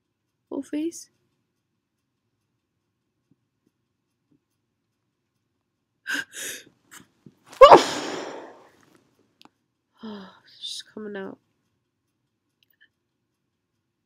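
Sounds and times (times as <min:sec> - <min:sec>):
gasping in-breaths: 0:06.1 - 0:06.7
person sneezing loudly: 0:07.5 - 0:08.6.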